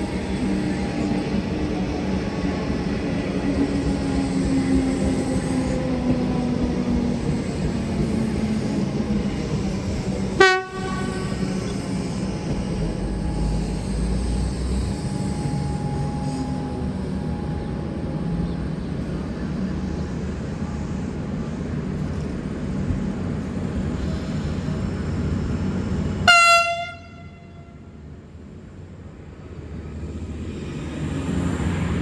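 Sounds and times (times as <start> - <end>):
train engine and wheels rumbling: 0.0 - 32.0
train horn blast: 10.3 - 12.1, 26.2 - 28.0.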